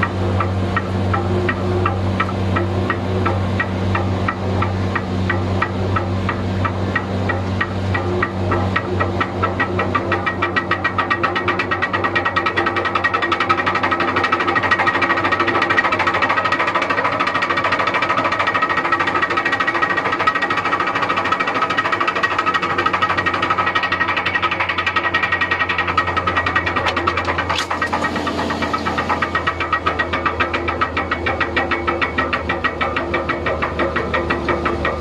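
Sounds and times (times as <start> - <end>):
cone crusher knocking clatter: 18.9 - 35.0.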